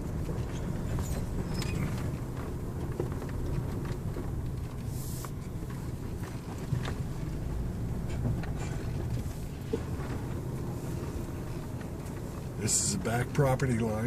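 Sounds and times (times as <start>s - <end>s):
vehicle rumbling while driving: 0.0s - 14.0s
small knocks and rattles: 0.1s - 10.6s.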